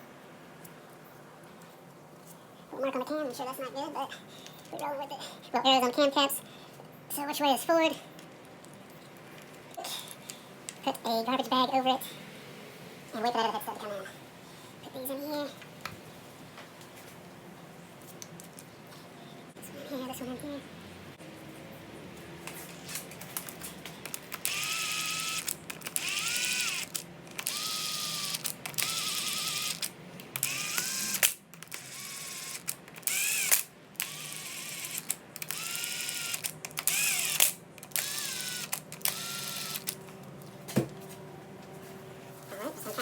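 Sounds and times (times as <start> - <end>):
cordless power tool motor bursts: 24.1 - 40.0.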